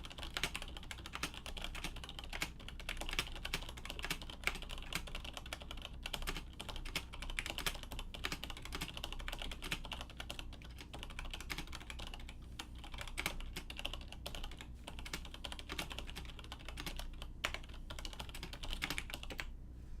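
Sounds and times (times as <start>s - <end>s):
fast keyboard typing clicks: 0.0s - 19.5s.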